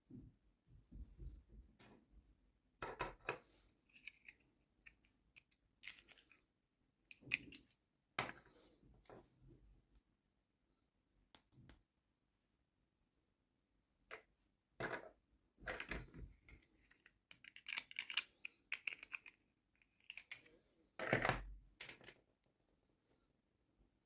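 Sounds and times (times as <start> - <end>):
plastic toy pieces clicking: 5.0 - 6.4, 16.9 - 20.6.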